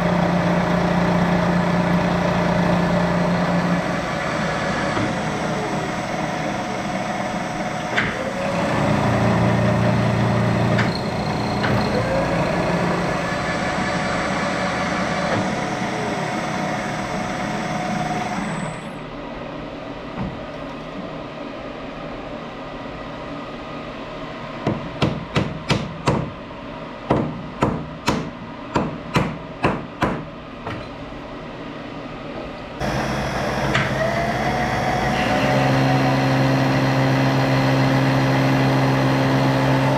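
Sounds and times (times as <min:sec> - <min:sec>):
machine tool motor: 0:32.8 - 0:39.9.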